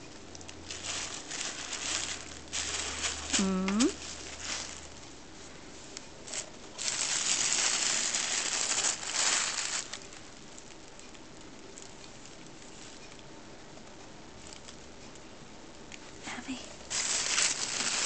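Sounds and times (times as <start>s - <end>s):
crinkly wrapping rustling: 0.0s - 5.5s, 6.2s - 13.2s, 16.9s - 18.0s.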